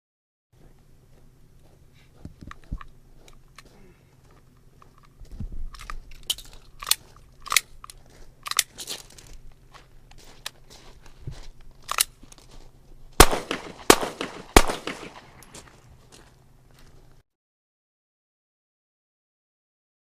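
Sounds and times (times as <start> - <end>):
low steady hum: 0.6 - 17.2.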